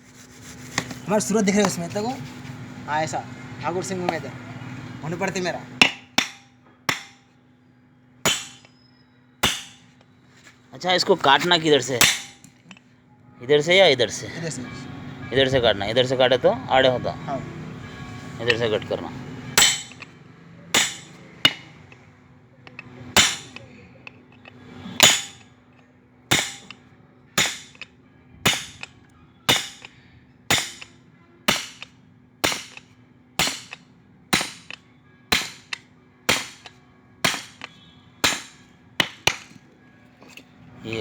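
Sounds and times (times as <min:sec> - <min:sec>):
hammer striking steel: 0:05.8 - 0:07.3, 0:08.2 - 0:10.0, 0:12.0 - 0:12.8, 0:18.2 - 0:22.1, 0:22.7 - 0:25.6, 0:26.3 - 0:39.6.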